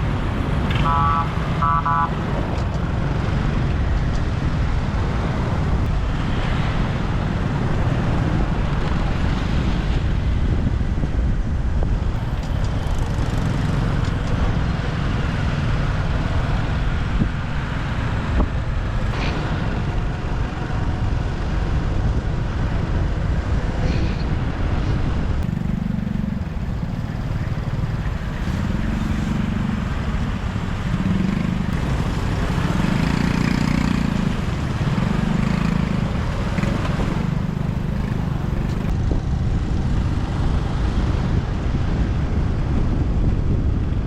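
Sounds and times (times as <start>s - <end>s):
surrounding traffic: 0.0s - 44.0s
wind rumble on microphone: 0.0s - 44.0s
motorbike engine: 12.2s - 15.1s, 25.4s - 38.9s.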